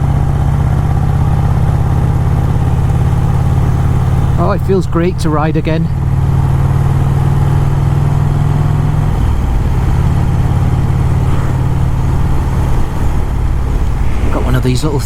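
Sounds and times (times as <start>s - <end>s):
motorcycle engine running: 0.0s - 15.0s
wind and road noise: 0.0s - 15.0s.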